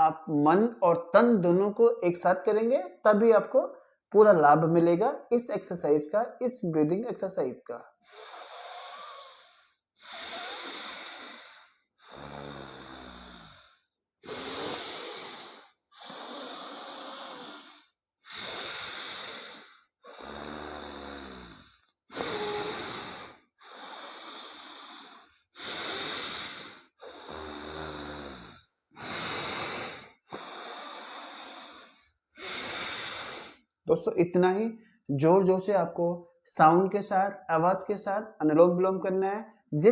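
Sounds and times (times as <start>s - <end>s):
forceful nostril breathing: 8.0s - 33.7s.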